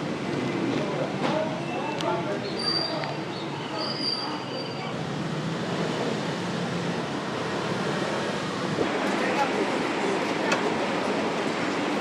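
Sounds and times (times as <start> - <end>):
busy place background noise: 0.0 - 12.0
faint voices: 8.8 - 12.0.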